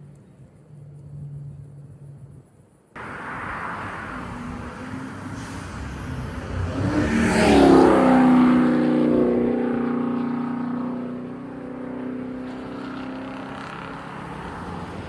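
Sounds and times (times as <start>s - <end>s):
car engine accelerating hard: 3.0s - 15.0s.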